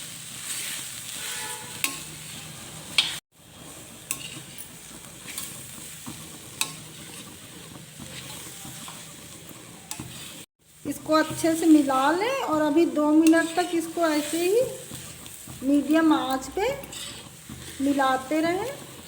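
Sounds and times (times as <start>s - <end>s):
paste sizzling in pan: 0.0s - 19.0s
spatula clicking on pan: 1.8s - 2.1s, 4.1s - 4.4s, 6.6s - 6.9s.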